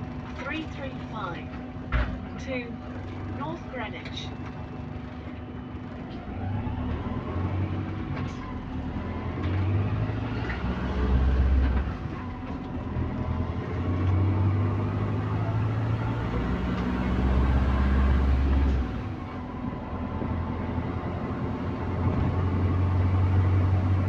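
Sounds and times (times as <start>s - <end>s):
bus engine droning: 0.0s - 24.0s.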